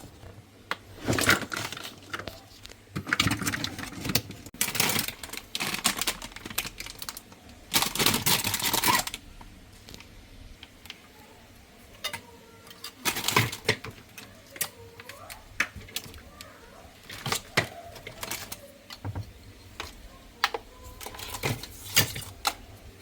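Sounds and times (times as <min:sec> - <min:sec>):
tools and plastic parts clicking: 0:00.7 - 0:09.2, 0:12.0 - 0:16.2, 0:17.0 - 0:22.6.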